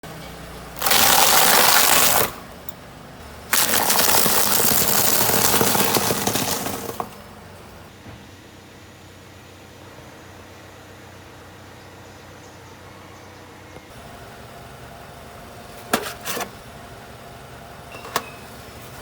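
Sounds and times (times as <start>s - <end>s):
car tyre crushing crunchy objects: 0.8s - 7.9s.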